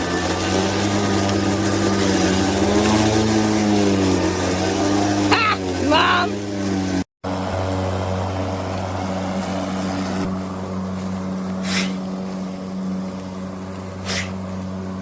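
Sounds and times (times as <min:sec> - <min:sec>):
electric lawn mower humming: 0:00.0 - 0:15.0
hissing rushes: 0:07.4 - 0:13.0, 0:13.9 - 0:15.0.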